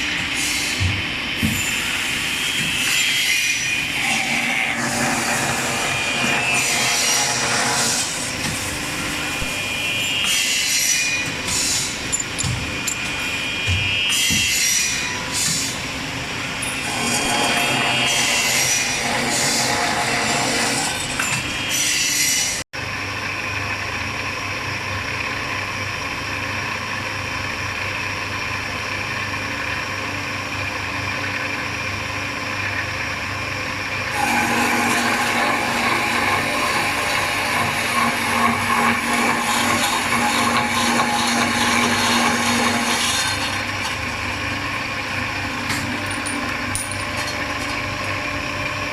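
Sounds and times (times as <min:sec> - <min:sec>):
cutting machine sawing: 0:02.5 - 0:08.4, 0:34.1 - 0:44.3.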